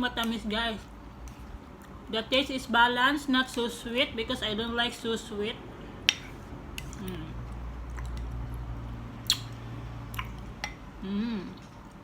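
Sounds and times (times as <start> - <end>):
mouth eating sounds: 9.2 - 11.7
person humming: 11.0 - 11.6.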